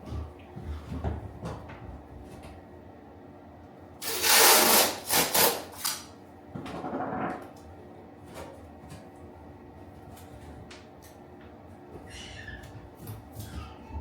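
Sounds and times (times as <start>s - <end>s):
hand tool scraping a surface: 4.0s - 6.0s.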